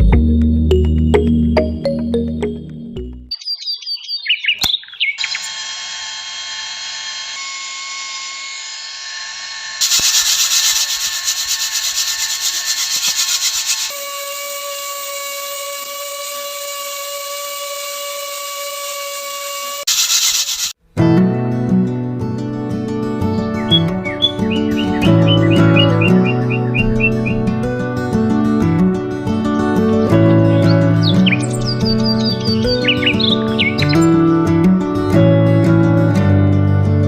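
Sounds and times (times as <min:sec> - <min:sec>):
small power tool whining: 0:05.1 - 0:20.8, 0:23.7 - 0:34.4.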